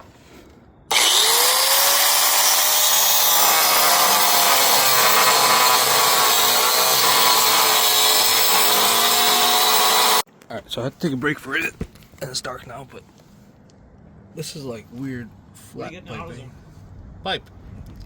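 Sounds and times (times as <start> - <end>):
power tool cutting steel pipe: 0.9 - 10.3.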